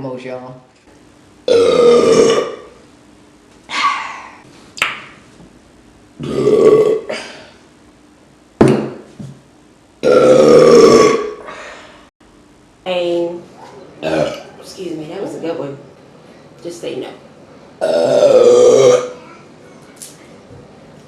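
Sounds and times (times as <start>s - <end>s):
woman burping loudly: 1.4s - 2.8s, 6.2s - 7.5s, 10.0s - 11.5s, 14.0s - 14.5s, 17.8s - 19.2s.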